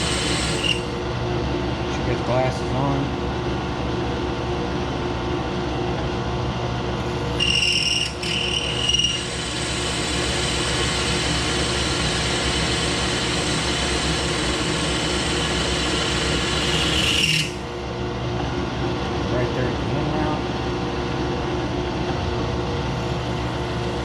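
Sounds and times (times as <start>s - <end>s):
drill press running: 0.0s - 0.9s, 7.4s - 17.7s
drill bit squealing in metal: 0.1s - 0.9s, 7.4s - 9.7s, 16.0s - 17.6s.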